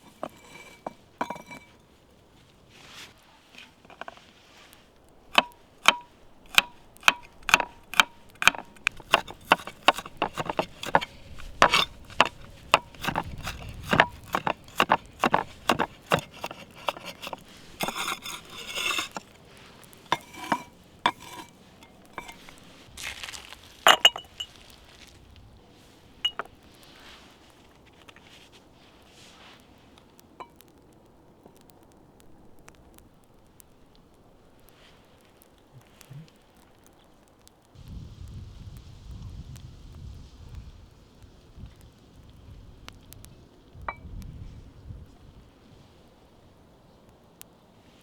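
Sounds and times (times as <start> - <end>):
metal utensils clinking: 0.0 - 1.8, 5.4 - 19.4, 20.0 - 22.6, 23.8 - 24.6, 26.2 - 26.5.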